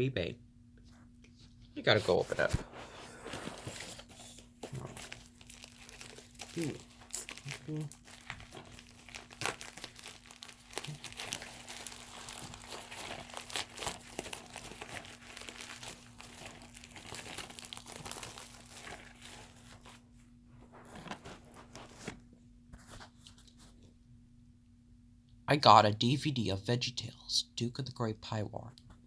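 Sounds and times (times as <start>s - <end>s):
packaging being torn and crumpled: 3.4s - 20.0s.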